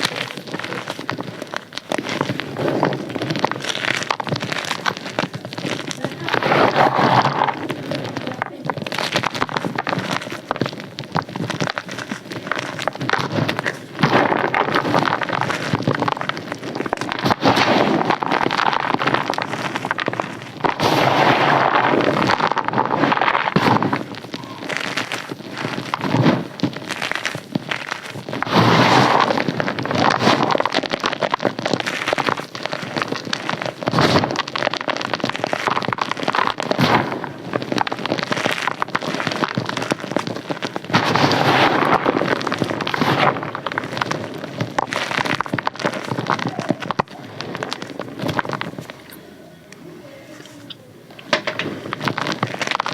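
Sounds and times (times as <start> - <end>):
crisp crunching and crackling: 0.0 - 52.9.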